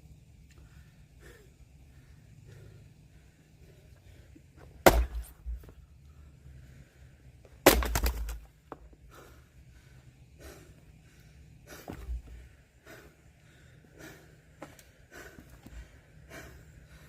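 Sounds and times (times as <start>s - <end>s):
axe splitting firewood: 4.8s - 5.7s, 7.6s - 8.5s.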